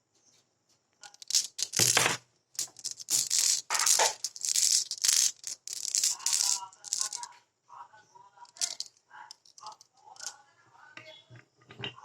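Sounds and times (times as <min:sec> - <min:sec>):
marbles rolling along track: 0:01.0 - 0:07.3, 0:08.4 - 0:10.4.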